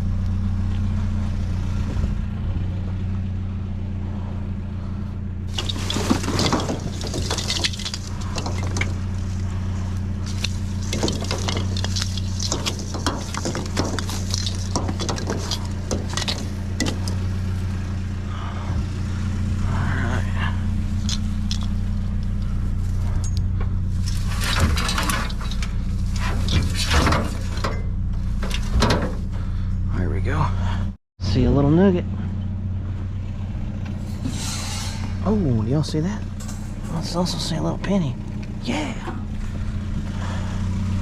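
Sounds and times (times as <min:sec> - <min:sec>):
vehicle engine idling: 0:00.0 - 0:41.0
small hard objects clinking: 0:05.5 - 0:17.3, 0:24.0 - 0:27.6.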